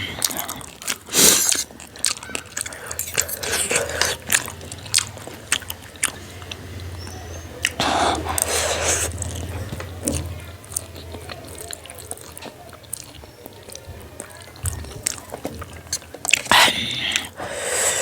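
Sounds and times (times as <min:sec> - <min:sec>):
person chewing food: 0:00.0 - 0:18.0
wet mouth clicks and smacks: 0:00.2 - 0:06.9, 0:10.1 - 0:17.4.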